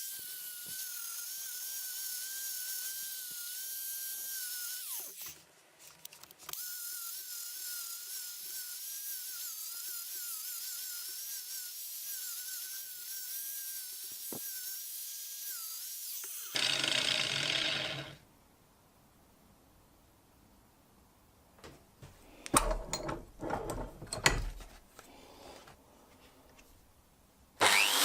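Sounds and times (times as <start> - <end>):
electric power tool whining: 6.5 - 18.2, 27.6 - 28.0.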